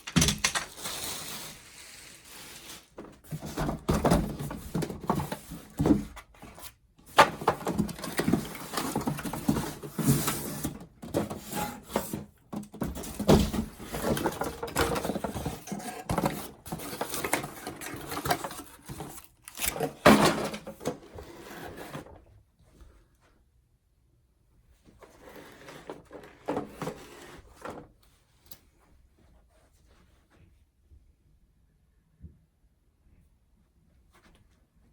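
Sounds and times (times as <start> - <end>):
plastic parts knocking and clicking: 0.0 - 0.8, 7.1 - 21.1.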